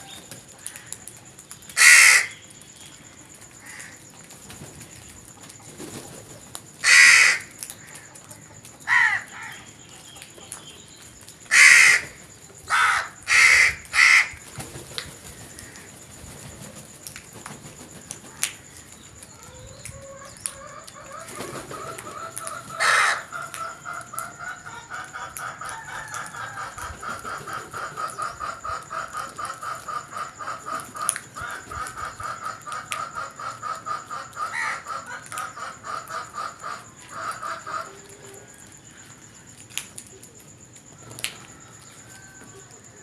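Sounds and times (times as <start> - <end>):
harsh bird call: 1.8 - 2.4.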